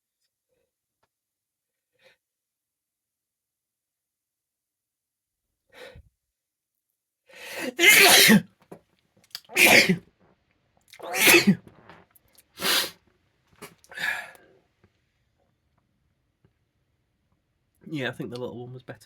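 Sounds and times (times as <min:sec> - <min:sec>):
man sneezing: 0:07.5 - 0:08.4, 0:09.5 - 0:10.0, 0:11.0 - 0:11.6.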